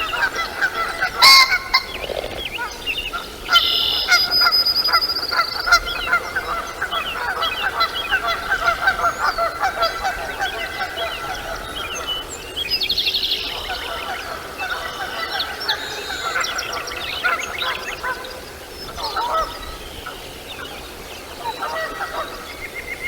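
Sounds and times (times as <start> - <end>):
birds honking: 0.0 - 11.7
birds chattering high notes: 1.0 - 5.8.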